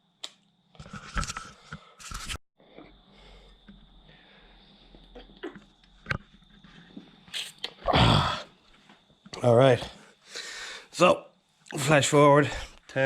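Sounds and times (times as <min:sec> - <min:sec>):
faint steady hum: 0:02.6 - 0:13.0.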